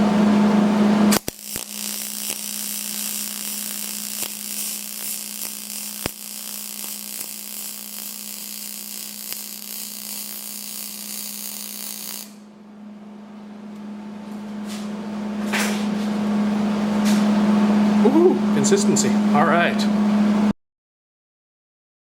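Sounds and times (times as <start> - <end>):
welding arc hissing and buzzing: 1.1 - 12.4.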